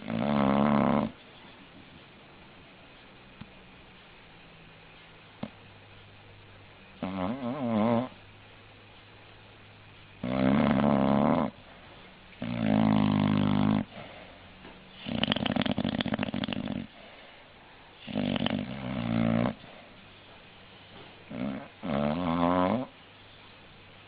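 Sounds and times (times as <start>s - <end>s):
dog snoring: 0.0s - 1.2s, 7.0s - 8.2s, 10.2s - 11.6s, 12.4s - 14.2s, 14.9s - 17.0s, 18.0s - 19.8s, 21.3s - 23.0s.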